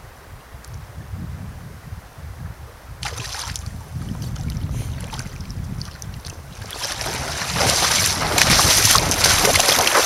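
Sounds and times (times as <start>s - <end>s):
wind buffeting microphone: 0.0s - 10.0s
water splashing: 3.0s - 10.0s.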